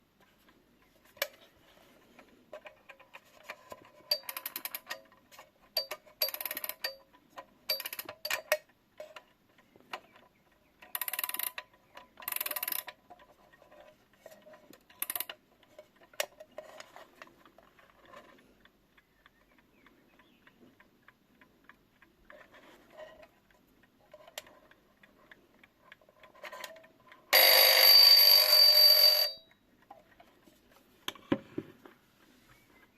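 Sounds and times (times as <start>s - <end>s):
alarm clock clicks: 4.1s - 5.0s, 5.8s - 7.0s, 7.7s - 8.5s, 27.3s - 29.6s
faint clock ticking: 18.4s - 26.2s
alarm bell ringing: 27.3s - 29.5s.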